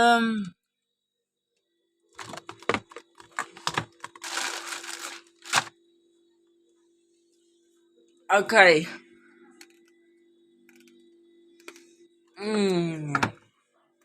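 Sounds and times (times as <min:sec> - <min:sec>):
faint steady hum: 0:00.0 - 0:14.0
containers clicking and knocking: 0:02.2 - 0:05.7
packet rustling: 0:02.2 - 0:05.7.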